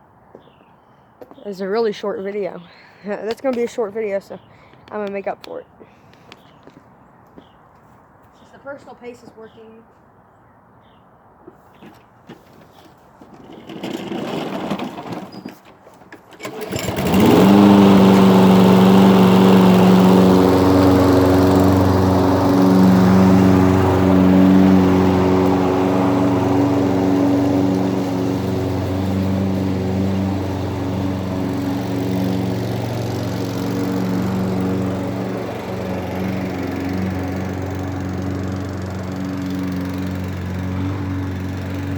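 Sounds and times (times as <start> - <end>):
lawn mower engine starting: 13.2 - 41.9.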